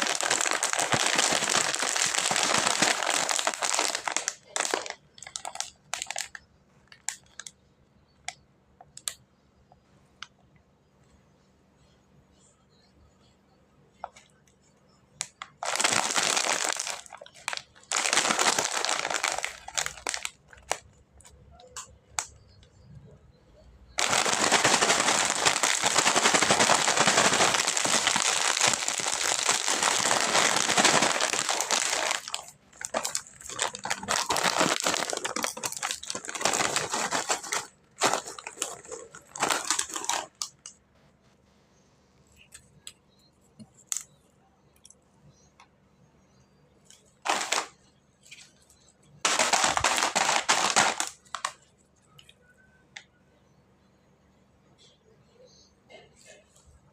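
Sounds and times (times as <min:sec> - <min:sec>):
plastic packaging crinkling: 0:00.0 - 0:07.6, 0:15.2 - 0:22.6, 0:23.9 - 0:40.8, 0:46.9 - 0:51.6.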